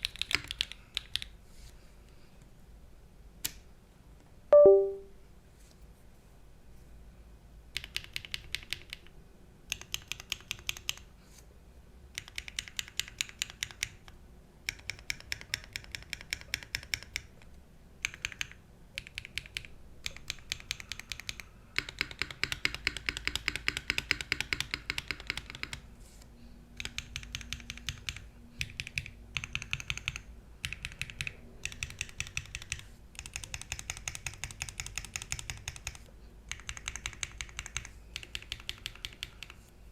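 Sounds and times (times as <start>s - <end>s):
mechanical keyboard typing: 0.0s - 1.3s, 7.8s - 9.1s, 9.7s - 11.1s, 12.1s - 14.0s, 14.7s - 17.3s, 18.0s - 25.8s, 26.8s - 39.6s.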